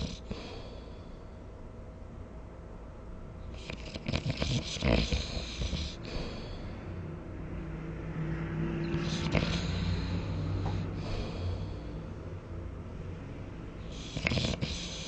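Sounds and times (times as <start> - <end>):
person snoring: 0.0 - 0.9, 3.6 - 7.0, 8.8 - 12.2, 13.8 - 15.0.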